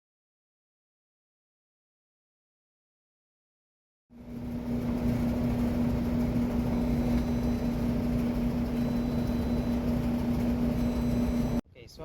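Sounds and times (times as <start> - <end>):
clothes dryer running: 4.1 - 11.6.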